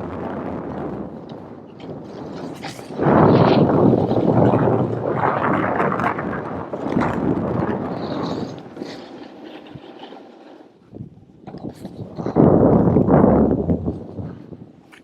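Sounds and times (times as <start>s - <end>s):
snowboard scraping over snow: 0.0s - 15.0s
wind on microphone: 0.0s - 15.0s.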